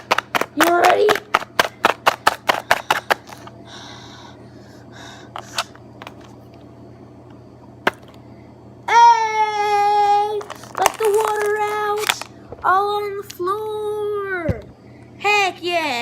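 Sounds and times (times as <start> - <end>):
rapid hand claps: 0.0 - 3.4.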